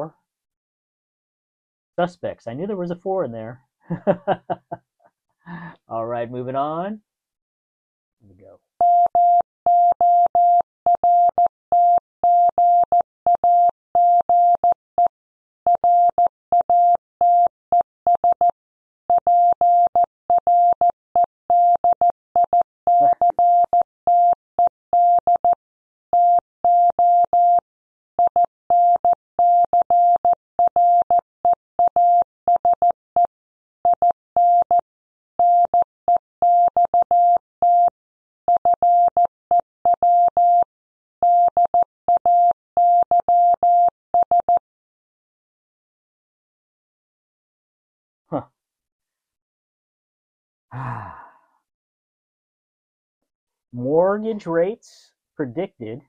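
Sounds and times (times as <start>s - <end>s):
morse code beeps: 8.8s - 12.8s, 21.5s - 24.3s, 34.0s - 34.8s, 38.6s - 44.5s.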